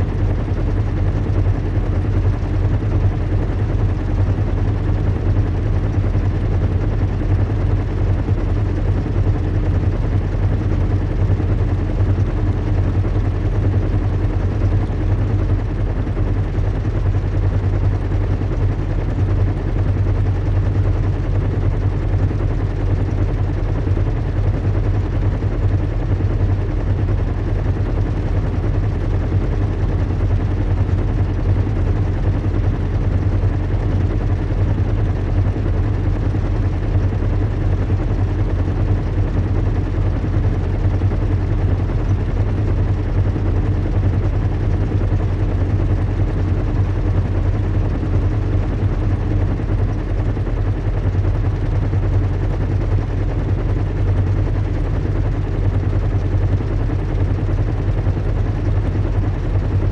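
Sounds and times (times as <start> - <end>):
low engine rumble and hum: 0.0 - 59.9.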